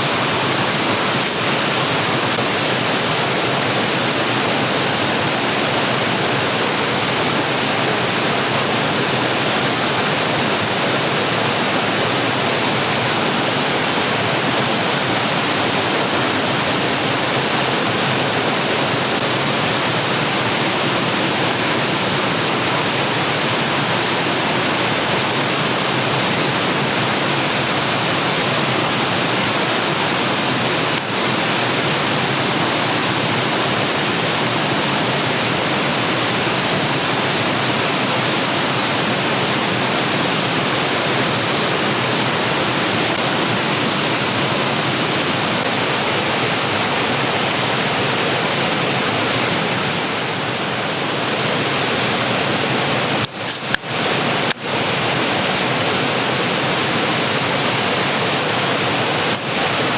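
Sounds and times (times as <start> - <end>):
flowing water rushing: 0.0 - 59.9.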